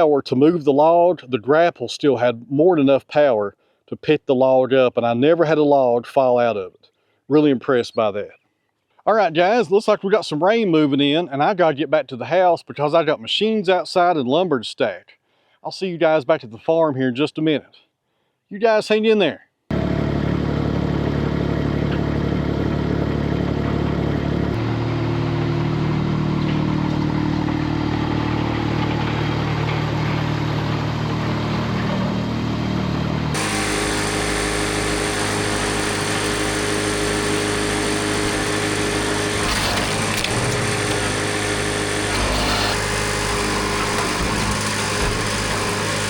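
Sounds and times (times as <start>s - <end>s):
brighter engine sound: 19.7s - 46.0s
engine running: 19.7s - 46.0s.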